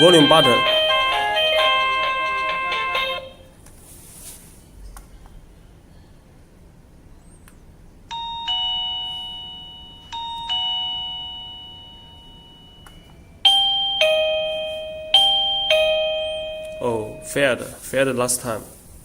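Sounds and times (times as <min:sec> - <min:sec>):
ding-dong doorbell chime: 0:00.0 - 0:03.4, 0:08.1 - 0:17.8.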